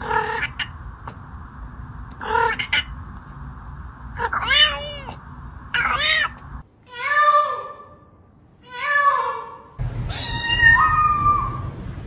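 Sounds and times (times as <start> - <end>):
cat meowing: 10.1 - 11.7.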